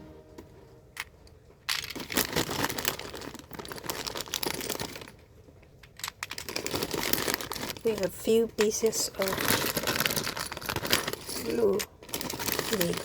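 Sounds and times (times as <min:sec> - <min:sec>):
plastic bags crinkling: 0:01.7 - 0:13.0
small plastic pieces clicking: 0:05.8 - 0:08.0, 0:08.6 - 0:13.0.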